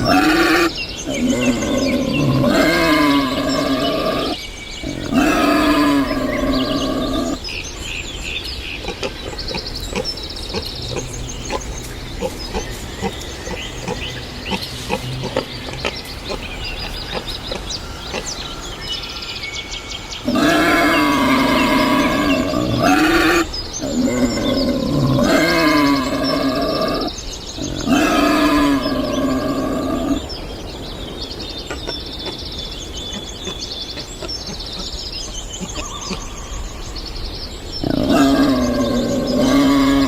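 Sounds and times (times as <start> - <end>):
wild boar grunting: 0.0 - 7.4, 8.8 - 18.4, 20.2 - 30.3, 37.8 - 40.0.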